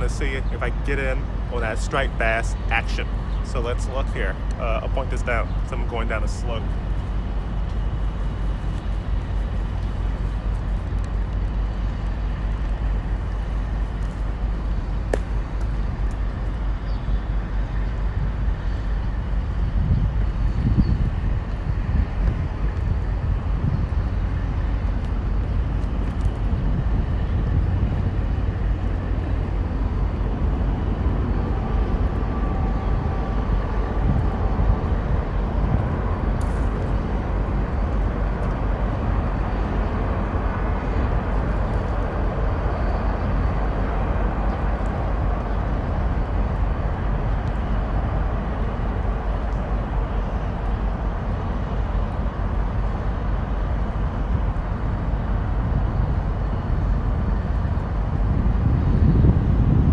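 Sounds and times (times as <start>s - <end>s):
road traffic rumble: 0.0s - 59.9s.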